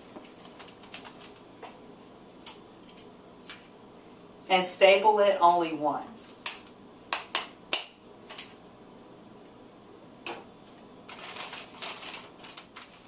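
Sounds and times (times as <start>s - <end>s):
paper bag crinkling: 0.3s - 1.5s, 11.0s - 13.0s.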